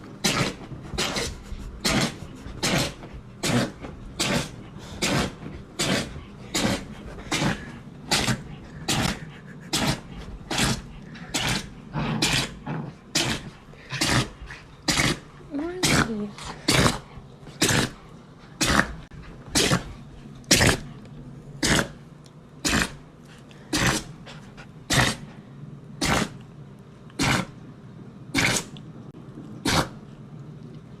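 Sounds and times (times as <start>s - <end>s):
dog sneezing: 0.2s - 9.1s, 28.4s - 28.7s, 29.6s - 30.0s.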